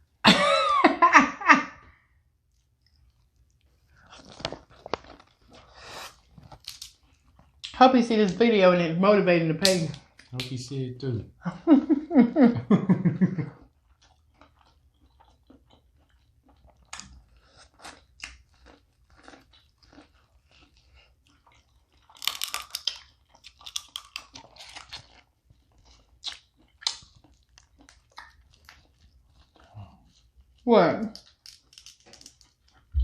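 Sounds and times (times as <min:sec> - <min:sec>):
crab shells cracking: 0:06.4 - 0:07.0, 0:22.0 - 0:25.3, 0:26.2 - 0:28.8, 0:31.1 - 0:32.8
chewing clicks: 0:14.0 - 0:30.3.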